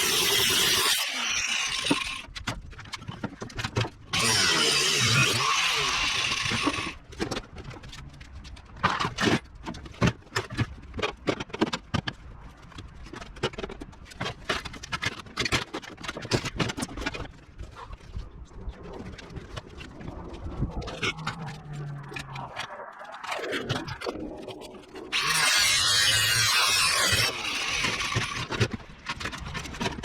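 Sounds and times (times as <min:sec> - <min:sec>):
power tool running: 0:00.0 - 0:02.2, 0:04.2 - 0:07.0, 0:25.1 - 0:28.7.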